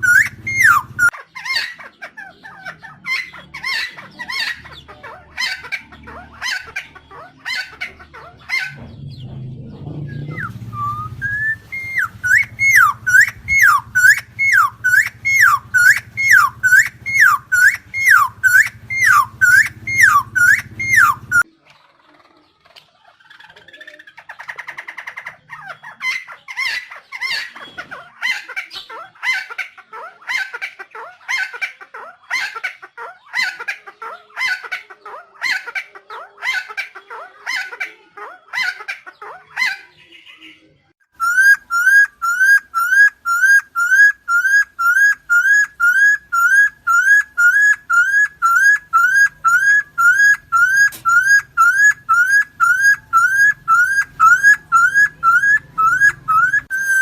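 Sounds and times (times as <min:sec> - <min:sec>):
rising whistled bird notes: 0:00.0 - 0:01.1, 0:10.0 - 0:21.5, 0:41.2 - 0:57.0
bird calling with harsh notes: 0:00.0 - 0:34.8, 0:35.5 - 0:57.0.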